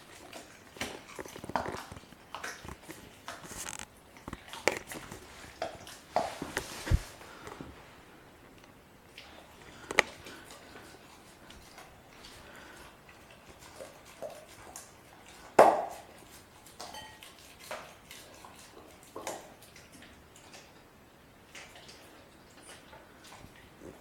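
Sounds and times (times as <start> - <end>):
puppy teeth cracking on bone: 0.0 - 6.3, 8.6 - 20.8.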